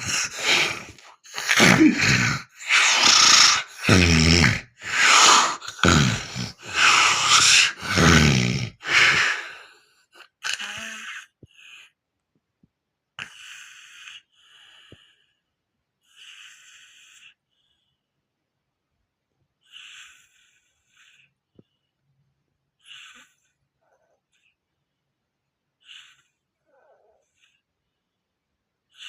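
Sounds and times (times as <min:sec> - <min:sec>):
person snoring heavily: 0:00.0 - 0:11.3.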